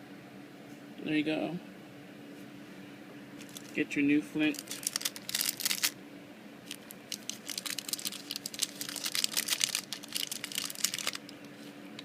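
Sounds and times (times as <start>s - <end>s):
packaging crinkling and crackling: 3.4s - 3.8s, 4.5s - 6.0s, 6.6s - 12.0s.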